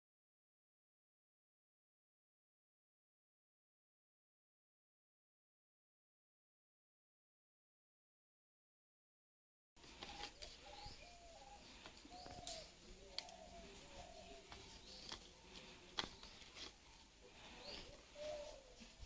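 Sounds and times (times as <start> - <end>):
birds calling: 9.8 - 19.0.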